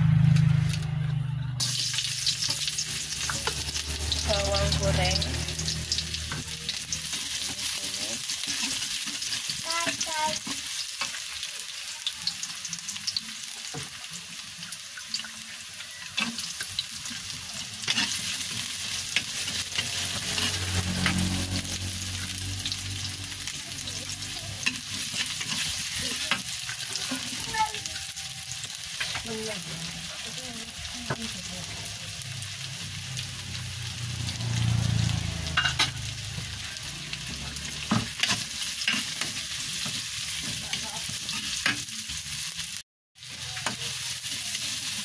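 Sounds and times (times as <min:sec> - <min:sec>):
food sizzling in oil: 0:01.6 - 0:45.0
spatula scraping pan: 0:07.1 - 0:11.2, 0:16.1 - 0:22.3, 0:24.6 - 0:29.5, 0:37.3 - 0:41.9.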